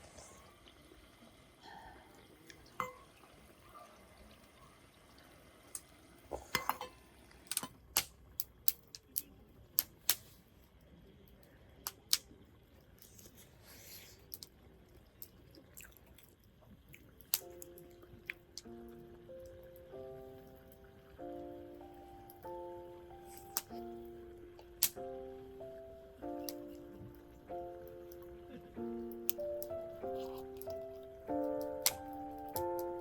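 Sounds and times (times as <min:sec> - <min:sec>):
cookware and utensils clinking: 0:02.7 - 0:03.4, 0:06.3 - 0:07.8.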